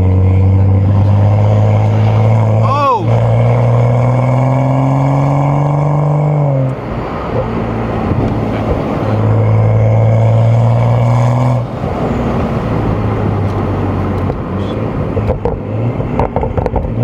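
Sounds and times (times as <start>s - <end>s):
car engine revving: 0.0s - 17.0s
road and tyre noise: 0.0s - 17.0s.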